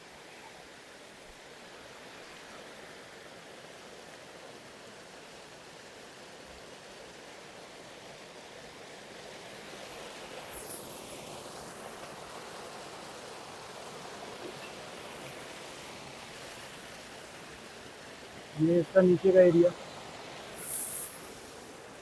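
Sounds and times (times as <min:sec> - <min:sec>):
waterfall rushing and splashing: 0:11.5 - 0:22.0.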